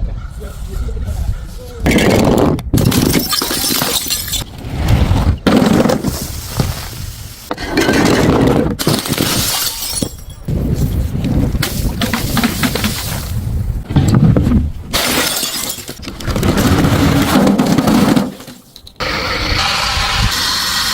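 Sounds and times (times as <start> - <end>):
glass bottles smashing: 2.8 - 4.4, 7.6 - 10.5, 14.9 - 19.0.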